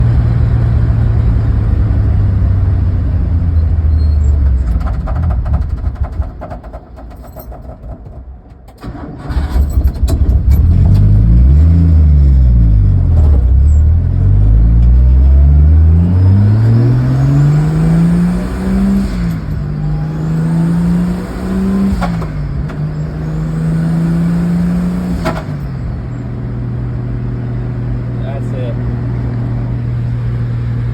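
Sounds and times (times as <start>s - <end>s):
car engine accelerating: 8.8s - 30.9s.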